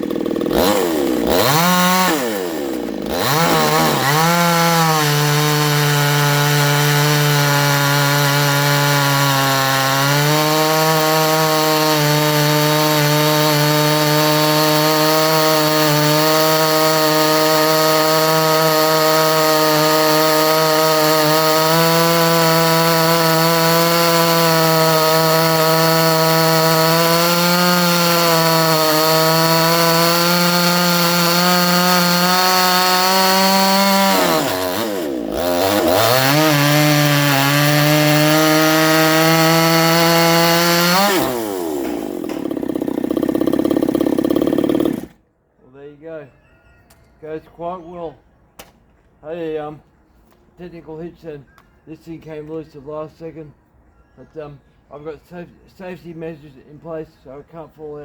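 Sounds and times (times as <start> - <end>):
chainsaw cutting wood: 0.0 - 45.2.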